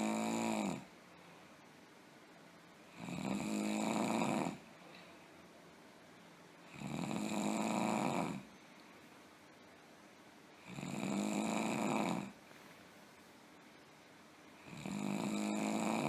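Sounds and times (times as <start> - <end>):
person snoring heavily: 0.0 - 0.9, 2.9 - 4.6, 6.7 - 8.5, 10.6 - 12.4, 14.6 - 16.0.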